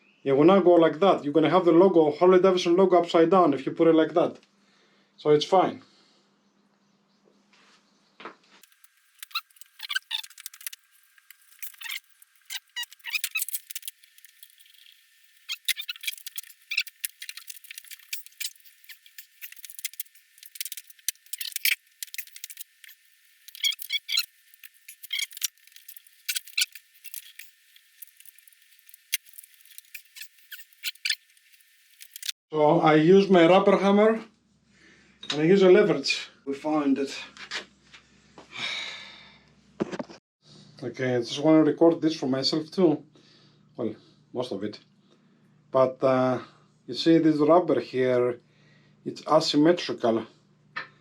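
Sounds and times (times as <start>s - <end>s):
rubber bushings squeaking: 8.6s - 32.4s.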